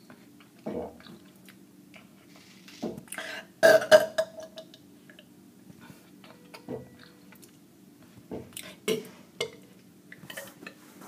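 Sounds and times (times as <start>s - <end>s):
person burping: 3.6s - 4.6s.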